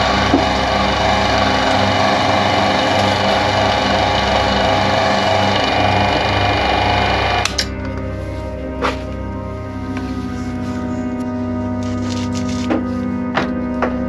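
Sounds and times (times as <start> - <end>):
electric wire stripper motor: 0.0 - 7.8, 11.8 - 12.8.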